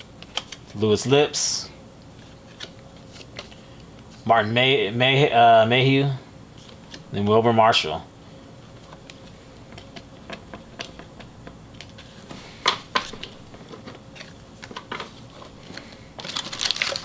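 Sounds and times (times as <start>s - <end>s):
card pack wrapper crinkling: 14.2s - 17.0s.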